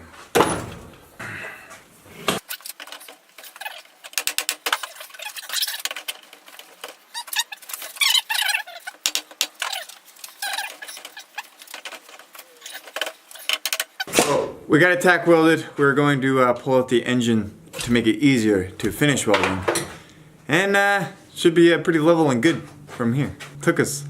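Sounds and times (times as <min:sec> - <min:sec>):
welder crackling: 0:02.4 - 0:14.1.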